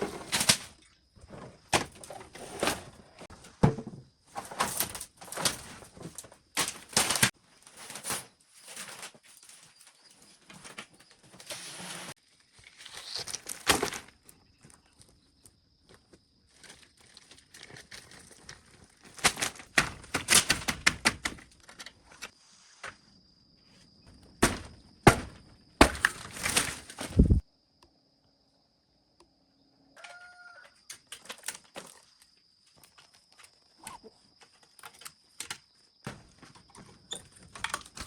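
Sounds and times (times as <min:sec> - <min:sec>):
sharp knocks and clattering: 0:03.2 - 0:07.3, 0:24.4 - 0:27.3.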